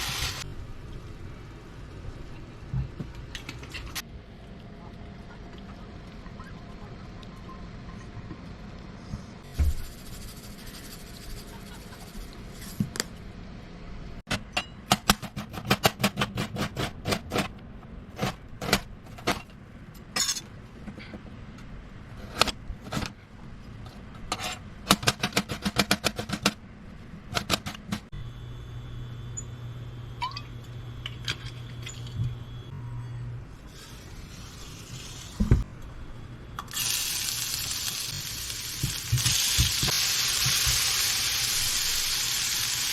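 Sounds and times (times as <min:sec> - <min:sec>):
food frying with sizzle: 0:00.0 - 0:00.5, 0:36.7 - 0:42.9
steady low hum: 0:26.2 - 0:39.0.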